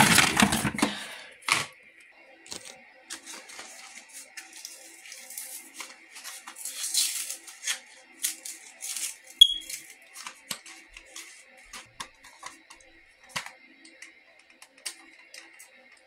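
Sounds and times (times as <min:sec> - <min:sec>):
packet crinkling and tearing: 0:02.5 - 0:12.6.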